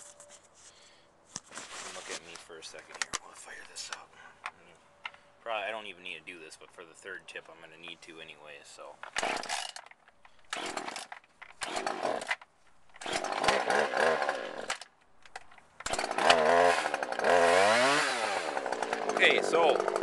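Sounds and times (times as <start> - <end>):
chainsaw starter cord pulls: 9.0 - 20.0
chainsaw engine running: 9.2 - 9.8, 10.5 - 12.3, 13.0 - 14.8, 15.8 - 20.0.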